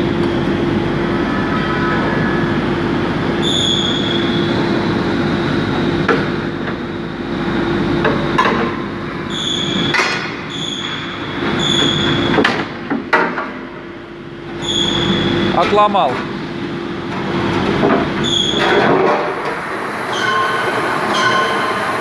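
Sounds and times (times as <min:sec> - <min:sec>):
machine hum: 0:00.0 - 0:22.0
short high-pitched squeals: 0:03.4 - 0:04.6, 0:09.3 - 0:12.3, 0:14.6 - 0:15.5, 0:18.2 - 0:18.8, 0:20.0 - 0:22.0.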